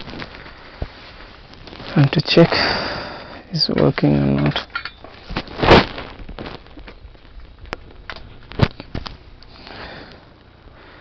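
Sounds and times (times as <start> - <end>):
fan handling clicks and knocks: 3.6 - 5.5, 7.7 - 9.2.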